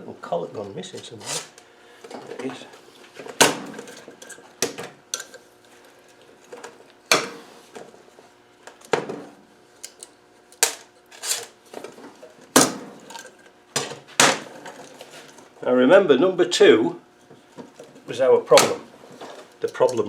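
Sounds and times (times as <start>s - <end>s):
metal parts clinking and clattering: 19.6s - 20.0s.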